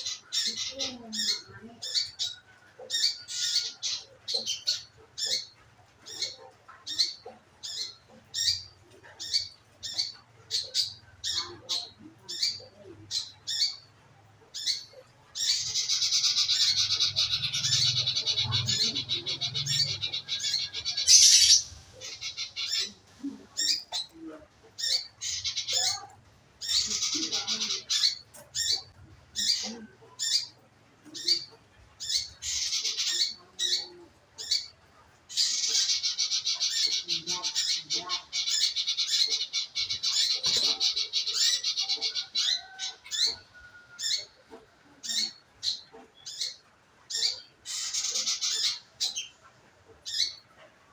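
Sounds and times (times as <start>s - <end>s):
bird song rattling trills: 14.6s - 22.9s
bird chirps: 14.6s - 23.0s.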